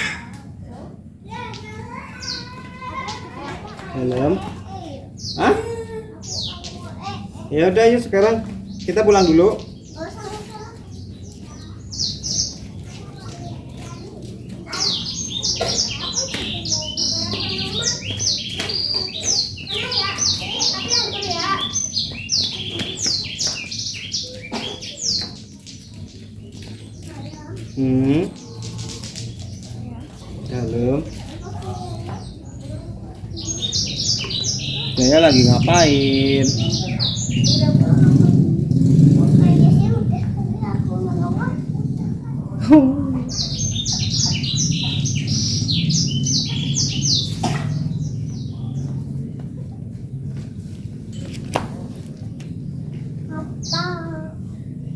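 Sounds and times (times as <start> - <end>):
small birds chirping: 0.0 - 54.9.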